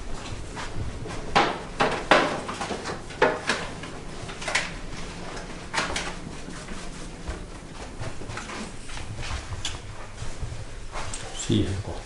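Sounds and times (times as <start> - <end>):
objects knocking and clattering: 1.3 - 4.7.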